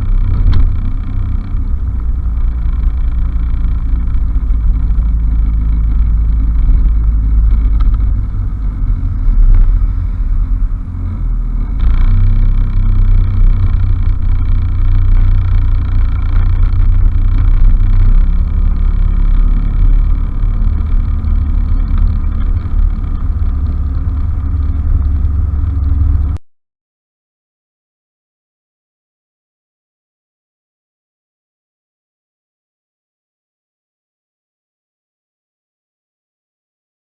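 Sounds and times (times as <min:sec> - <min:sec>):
scooter engine running: 0:00.0 - 0:26.4.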